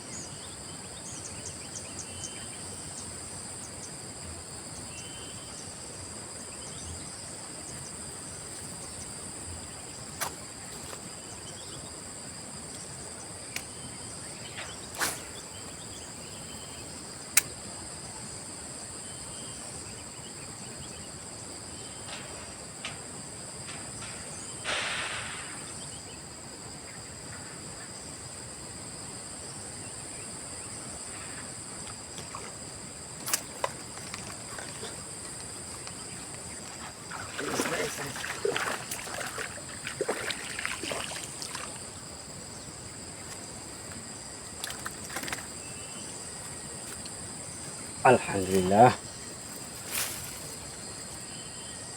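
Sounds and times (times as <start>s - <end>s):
high-pitched insect chorus: 0.0s - 51.9s
short rushing noise: 23.8s - 25.8s.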